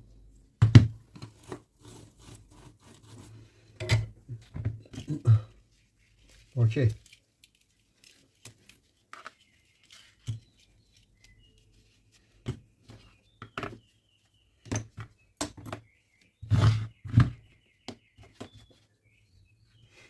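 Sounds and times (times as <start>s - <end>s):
faint bird chirping: 8.1s - 20.0s.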